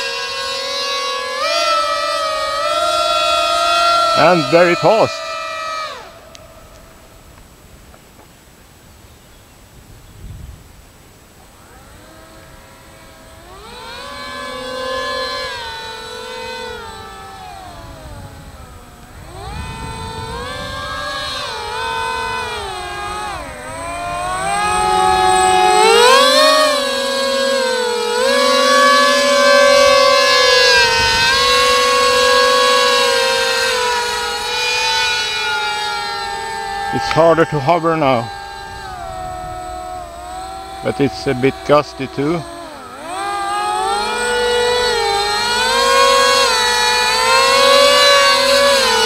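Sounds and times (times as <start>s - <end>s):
electric motors and propellers whining: 0.0s - 49.0s.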